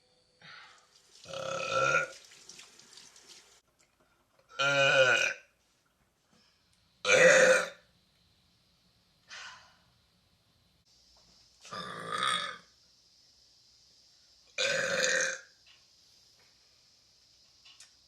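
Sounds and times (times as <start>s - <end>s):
woman burping: 1.3s - 2.1s, 4.5s - 5.4s, 7.1s - 7.8s, 14.6s - 15.4s.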